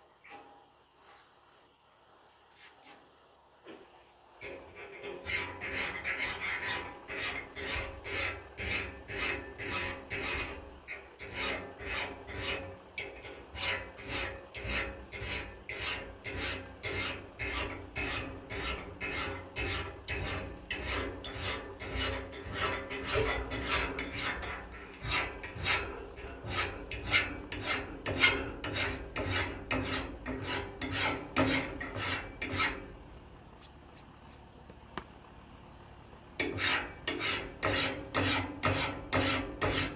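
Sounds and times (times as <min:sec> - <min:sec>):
metal file rasping on axe edge: 0:04.4 - 0:32.9, 0:36.4 - 0:39.9.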